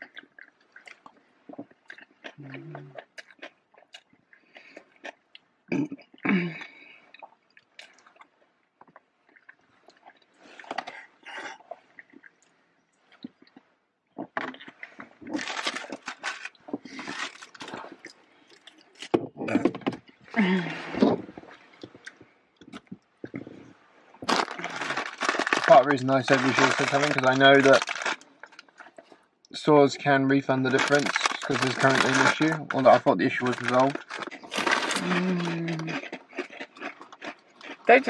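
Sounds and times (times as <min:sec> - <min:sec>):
chewing and mouth clicks: 0:00.0 - 0:19.2, 0:21.2 - 0:29.6, 0:30.7 - 0:38.0
food packaging crinkling: 0:14.4 - 0:19.1, 0:24.2 - 0:29.2, 0:30.7 - 0:37.9
person humming: 0:35.0 - 0:35.9.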